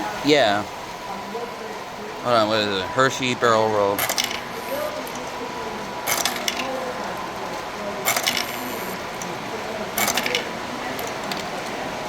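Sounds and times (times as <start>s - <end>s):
metallic clinking rattles: 4.0s - 5.2s, 8.1s - 9.0s, 10.0s - 11.5s.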